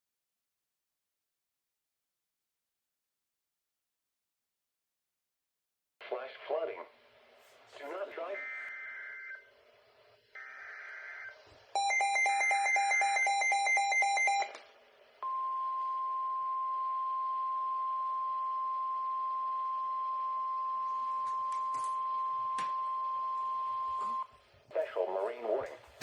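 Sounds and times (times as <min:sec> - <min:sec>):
steady single-pitch alarm tone: 0:10.4 - 0:14.6.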